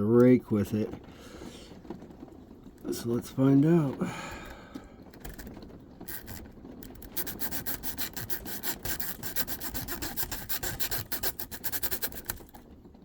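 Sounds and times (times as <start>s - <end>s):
zip tie scratching in lock: 5.3s - 12.6s.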